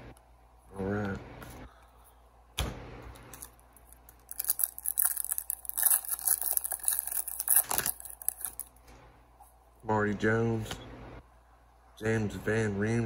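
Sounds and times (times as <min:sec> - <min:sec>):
foil wrapper tearing and crinkling: 0:03.3 - 0:08.7.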